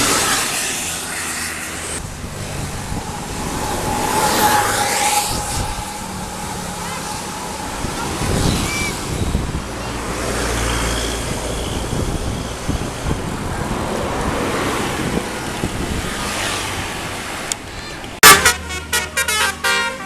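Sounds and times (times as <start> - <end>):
road traffic passing: 0.0 - 20.0.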